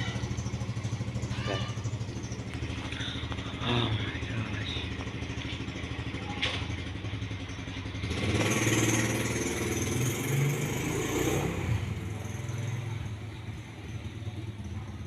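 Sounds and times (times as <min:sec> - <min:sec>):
traffic engine hum: 0:00.0 - 0:15.0
vehicle passing: 0:07.6 - 0:15.0.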